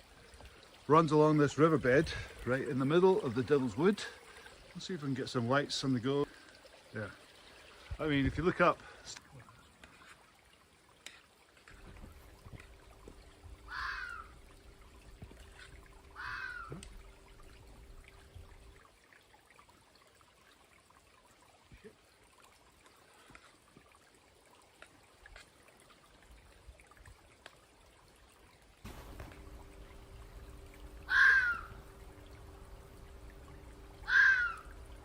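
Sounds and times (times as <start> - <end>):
river trickling: 0.0 - 35.0
faint low hum: 11.7 - 18.8, 28.9 - 35.0
crow cawing: 13.7 - 14.4, 16.2 - 16.9, 31.0 - 31.8, 34.0 - 34.8.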